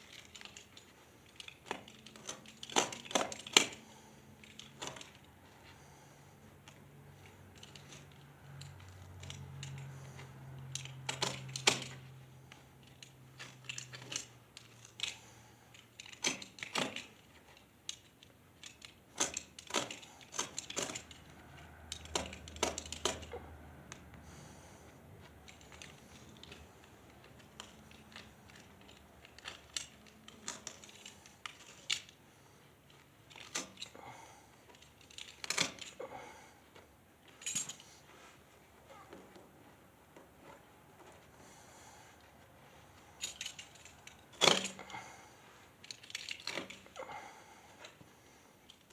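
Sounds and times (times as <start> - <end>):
metal hardware clinking: 0.0 - 5.3, 6.6 - 24.0, 25.4 - 32.2, 32.8 - 34.0, 34.6 - 38.3, 43.0 - 45.2, 45.8 - 48.0.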